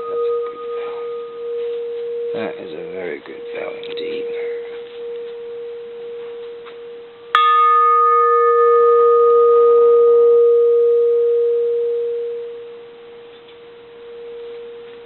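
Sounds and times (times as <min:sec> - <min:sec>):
temple bell struck with wooden striker: 0:00.0 - 0:10.9.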